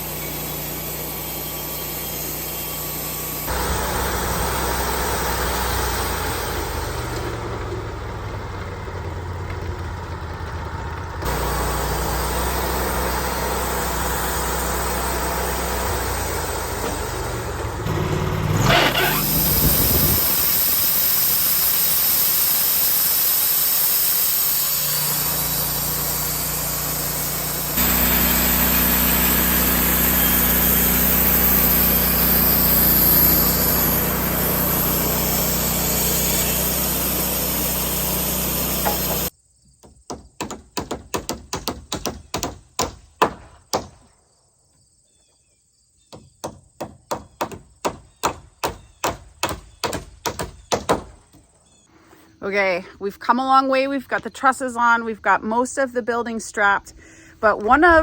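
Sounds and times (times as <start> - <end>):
motor humming: 0.0 - 39.3.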